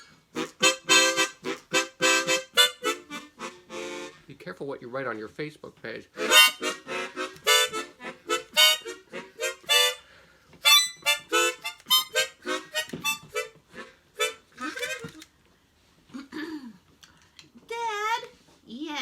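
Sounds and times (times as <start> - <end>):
harmonica short notes: 0.0 - 4.3, 6.2 - 15.3.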